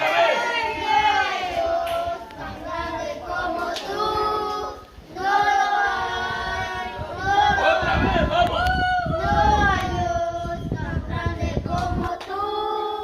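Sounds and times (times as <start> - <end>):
children singing: 0.0 - 7.9, 9.2 - 13.0.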